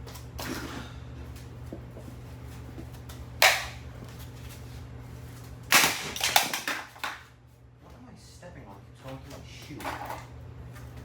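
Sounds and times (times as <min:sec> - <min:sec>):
steady low hum: 0:00.0 - 0:11.0
plastic smashing crack: 0:05.7 - 0:07.3.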